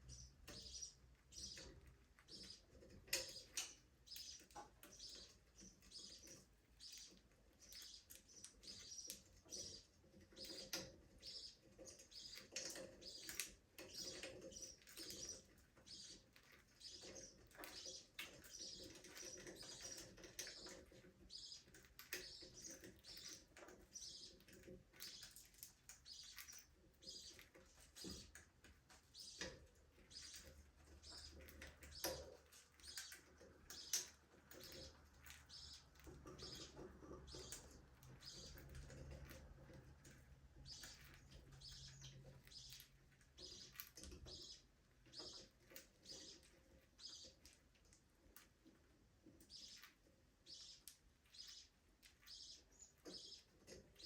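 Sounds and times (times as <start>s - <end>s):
budgerigars chirping and warbling: 0.0s - 54.0s.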